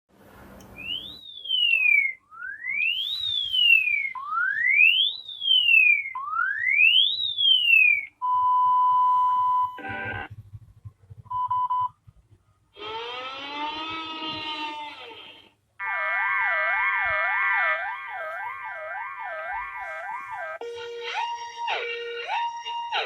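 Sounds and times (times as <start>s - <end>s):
rising and falling alarm wails: 0.8s - 8.1s, 15.8s - 23.0s
steady beep tone: 11.3s - 12.0s.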